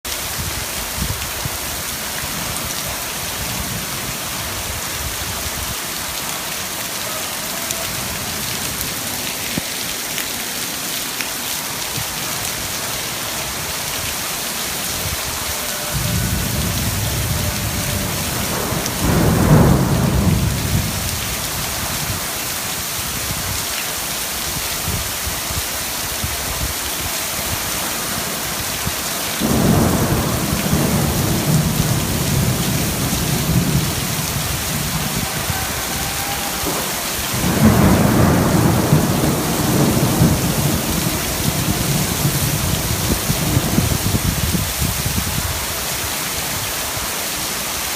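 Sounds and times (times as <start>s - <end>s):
steady rain hissing: 0.1s - 47.9s
thunder rumbling: 13.5s - 22.5s, 27.5s - 45.5s.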